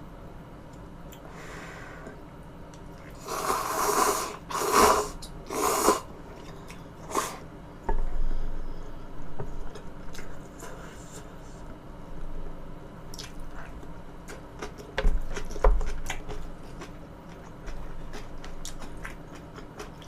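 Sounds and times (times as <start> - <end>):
loud slurping: 3.2 - 6.1
wet chewing: 13.1 - 20.0.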